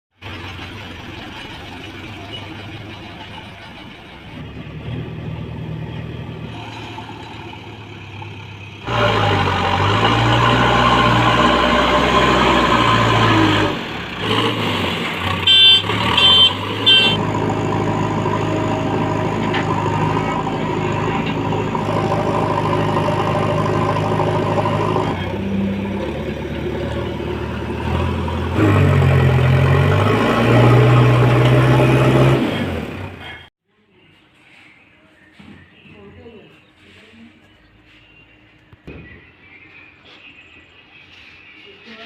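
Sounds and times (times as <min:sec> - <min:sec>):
backhoe diesel engine: 0:00.1 - 0:33.5.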